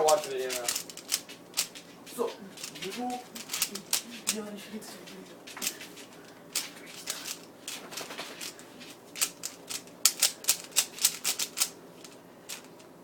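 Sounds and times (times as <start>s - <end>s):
puzzle cube clicking: 2.7s - 4.0s, 9.2s - 12.7s.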